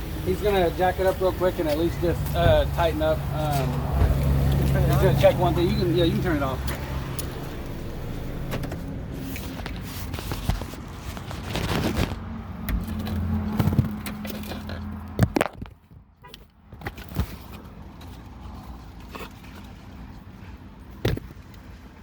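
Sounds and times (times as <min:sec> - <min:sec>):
car engine idling: 0:00.0 - 0:10.8.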